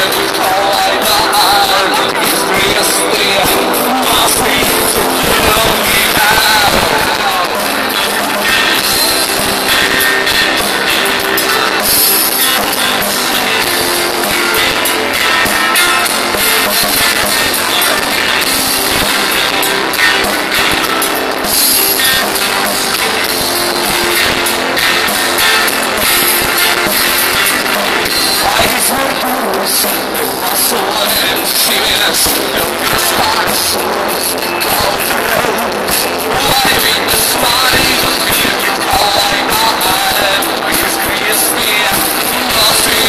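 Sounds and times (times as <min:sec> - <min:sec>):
live rock band: 0:00.0 - 0:43.0.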